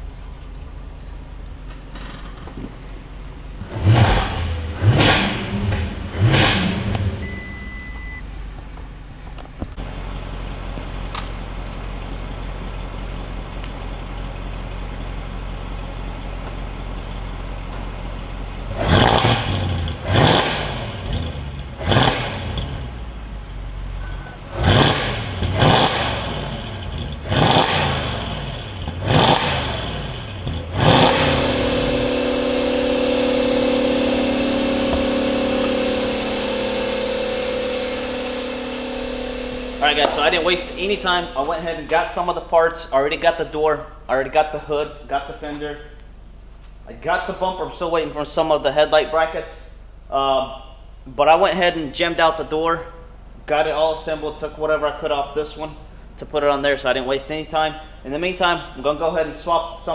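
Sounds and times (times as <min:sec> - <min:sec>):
car engine idling: 0:00.0 - 0:59.9
car engine revving: 0:03.5 - 0:12.2, 0:17.7 - 0:42.5
steady hum: 0:31.0 - 0:42.9.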